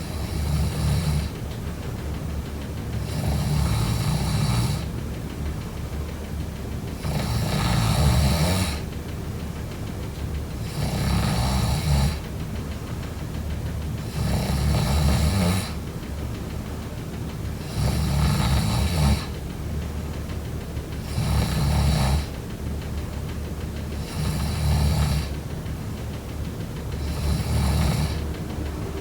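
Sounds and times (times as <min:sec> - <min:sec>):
quiet breathing: 0:23.7 - 0:29.0
person snoring: 0:27.0 - 0:28.4.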